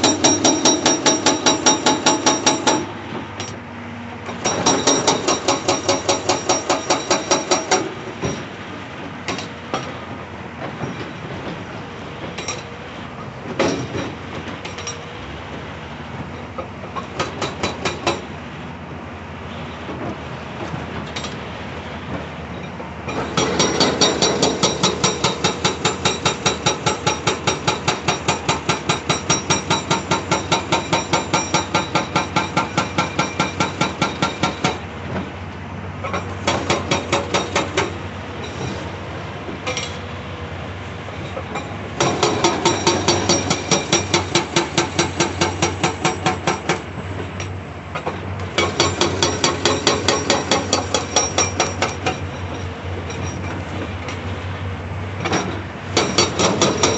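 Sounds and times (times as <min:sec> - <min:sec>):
hydraulic breaker hammering rock: 0:00.0 - 0:03.6, 0:04.3 - 0:08.5, 0:17.0 - 0:18.3, 0:23.1 - 0:35.3, 0:36.0 - 0:38.8, 0:41.4 - 0:46.9, 0:47.9 - 0:53.6, 0:55.2 - 0:56.9.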